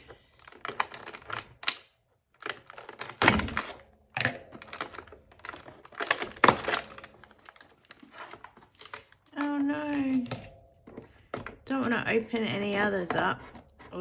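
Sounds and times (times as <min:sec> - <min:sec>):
fingers tearing cardboard: 0:12.1 - 0:14.0.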